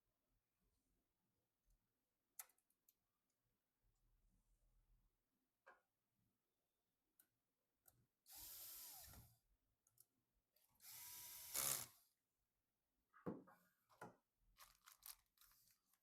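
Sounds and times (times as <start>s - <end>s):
electric screwdriver running: 8.3s - 9.2s, 10.8s - 12.0s.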